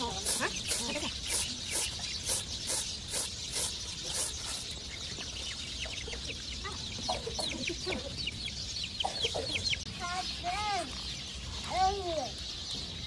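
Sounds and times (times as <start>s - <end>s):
chickens clucking: 0.0s - 13.0s
high peeping chirps: 0.0s - 13.0s
short hissing scrapes: 0.2s - 4.8s.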